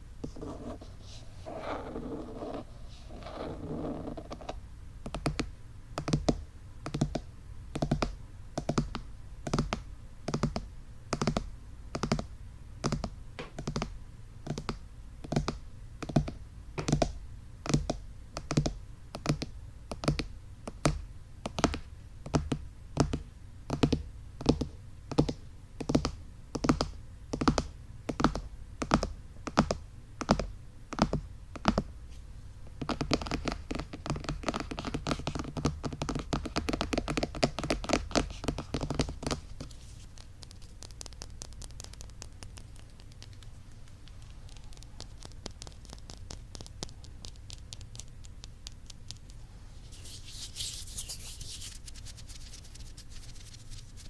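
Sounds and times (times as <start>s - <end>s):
fingertips tapping microphone: 32.8s - 54.0s.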